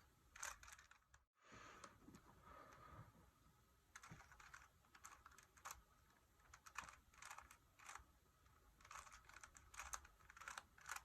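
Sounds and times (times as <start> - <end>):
rubik's cube clicking: 0.3 - 1.1, 3.9 - 11.0.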